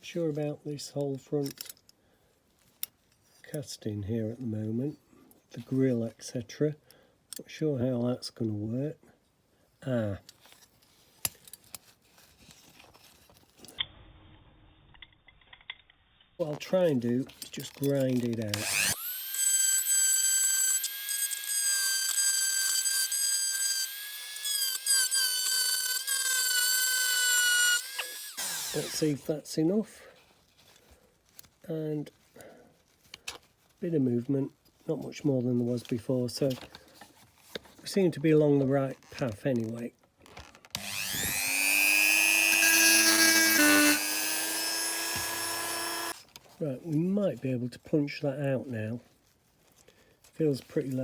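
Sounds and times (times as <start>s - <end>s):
rotary tool grinding metal: 17.5s - 29.3s, 40.7s - 46.2s.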